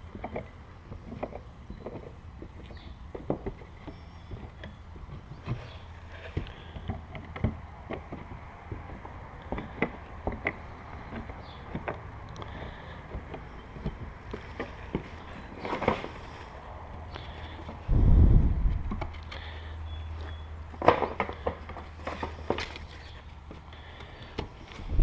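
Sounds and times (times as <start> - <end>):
wooden frame parts knocking: 0.0 - 16.2, 20.7 - 25.0
steady low hum: 0.0 - 25.0
scraping rustle: 14.3 - 16.7.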